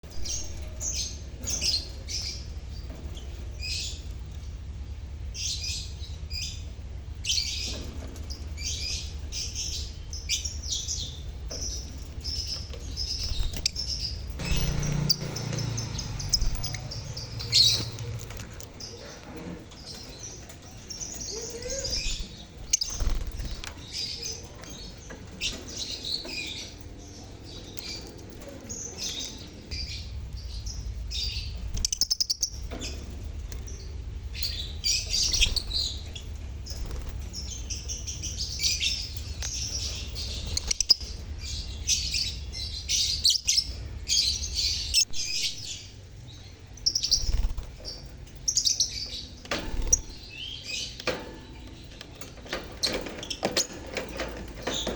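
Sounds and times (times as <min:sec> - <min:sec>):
flock of birds chirping: 0:00.0 - 0:54.9.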